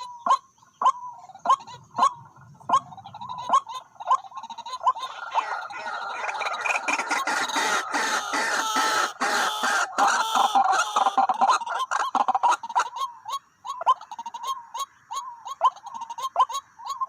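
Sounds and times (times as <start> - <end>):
waterhens clucking calls: 0.0 - 17.0.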